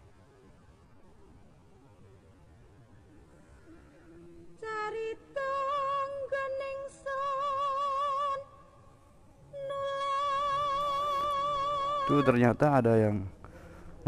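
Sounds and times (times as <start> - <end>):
high wordless singing voice: 9.5 - 12.8.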